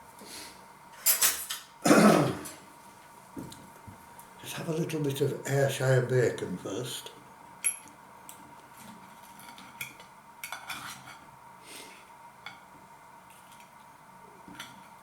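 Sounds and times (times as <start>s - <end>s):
knife and fork clinking on a plate: 1.0s - 1.7s.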